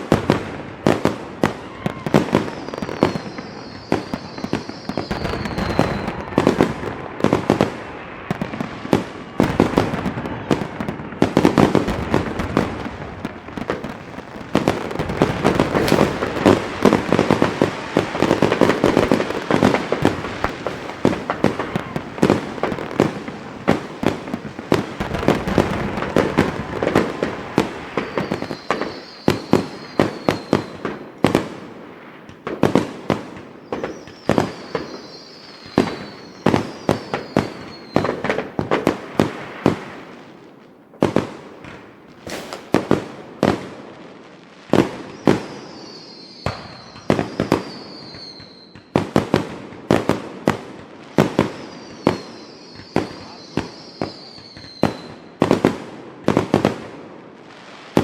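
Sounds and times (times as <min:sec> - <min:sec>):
fireworks bangs and crackling: 0:00.0 - 0:58.0
high falling whistle: 0:02.6 - 0:06.5, 0:28.0 - 0:30.8, 0:45.2 - 0:48.8.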